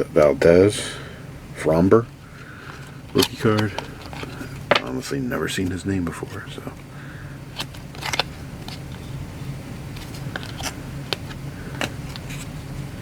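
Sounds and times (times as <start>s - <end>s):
low room hum: 0.0s - 13.0s
cards being flipped by hand: 2.7s - 5.0s, 7.5s - 9.2s, 9.9s - 12.7s.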